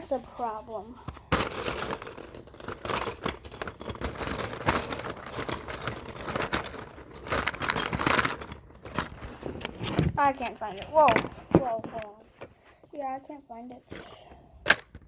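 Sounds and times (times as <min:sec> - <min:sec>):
rustling: 0:00.0 - 0:13.0
plastic pieces clicking and rattling: 0:01.1 - 0:12.1.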